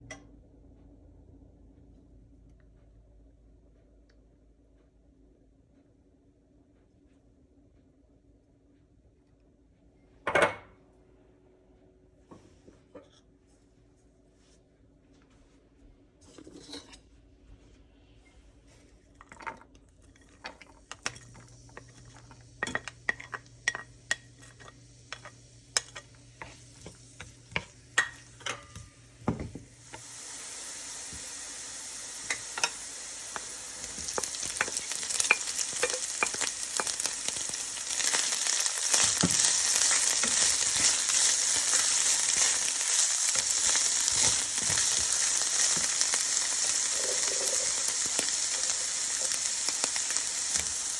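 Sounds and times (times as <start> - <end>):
stirring clicks: 20.1 - 28.8, 33.3 - 50.8
food sizzling in hot oil: 21.0 - 50.9
utensil tapping a pan: 22.6 - 29.7.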